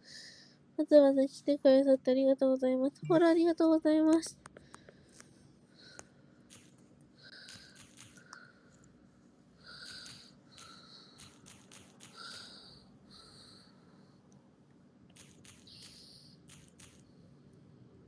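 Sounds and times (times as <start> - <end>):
breathy bursts with clicks: 4.4 - 9.0, 9.6 - 14.4, 15.2 - 17.6.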